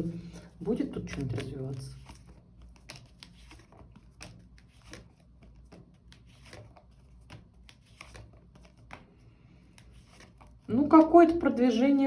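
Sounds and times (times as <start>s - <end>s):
cards slapping and rustling: 0.0s - 12.0s.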